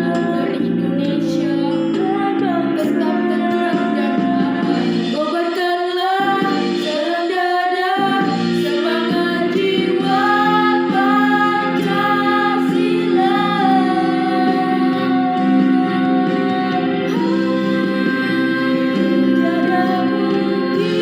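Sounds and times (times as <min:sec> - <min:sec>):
women singing: 0:00.0 - 0:21.0
sustained accompaniment: 0:08.1 - 0:21.0.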